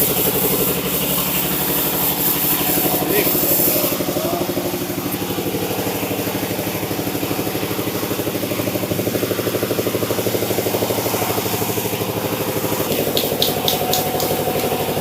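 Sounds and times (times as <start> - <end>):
sawmill engine running: 0.0 - 15.0.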